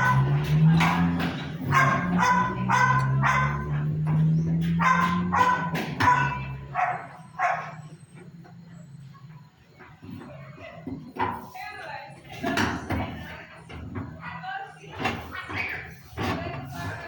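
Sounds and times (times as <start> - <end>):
dog barking: 0.0 - 7.9.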